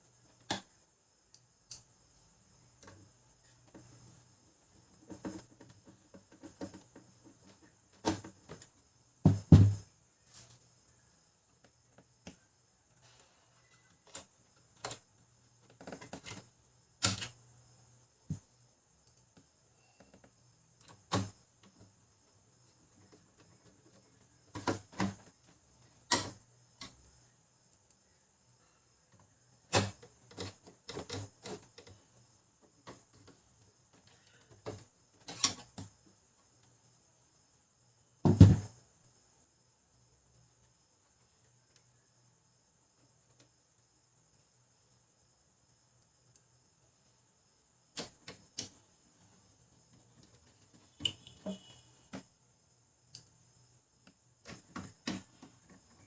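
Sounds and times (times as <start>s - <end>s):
plastic parts clicking and knocking: 4.8s - 9.9s, 13.7s - 17.4s, 22.8s - 27.1s, 29.1s - 35.9s, 54.0s - 56.0s.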